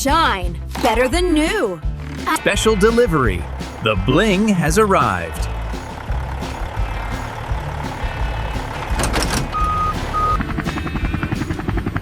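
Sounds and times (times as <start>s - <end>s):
cartoon truck engine rumbling: 0.0s - 12.0s
reversing beeps: 9.5s - 10.4s.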